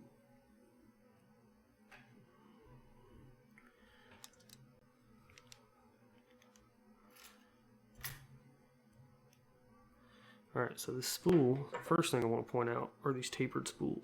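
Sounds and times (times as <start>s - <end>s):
faint clicks of handled objects: 5.3s - 7.4s.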